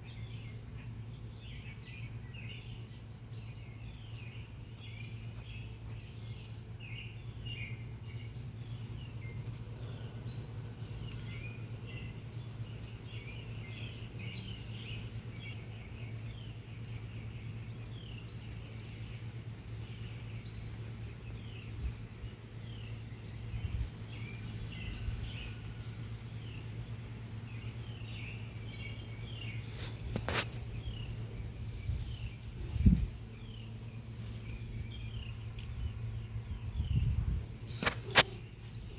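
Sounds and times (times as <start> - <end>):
small birds chirping: 0.0 - 38.9
steady low hum: 0.0 - 38.9
sharp click: 37.7 - 38.5.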